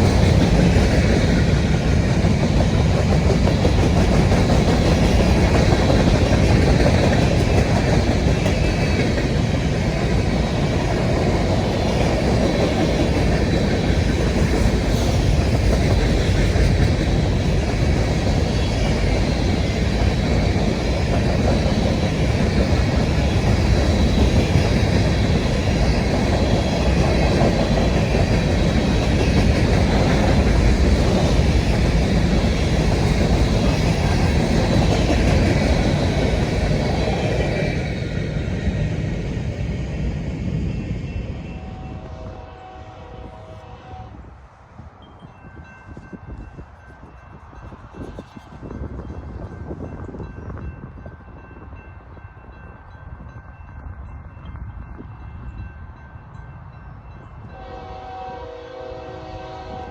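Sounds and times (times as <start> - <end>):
train wheels clattering on track: 0.0 - 41.7.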